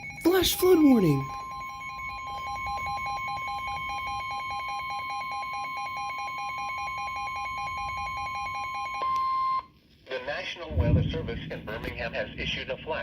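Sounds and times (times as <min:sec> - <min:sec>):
high-pitched alarm tone: 0:00.0 - 0:09.6
rapid pulsing low beep: 0:00.0 - 0:09.6.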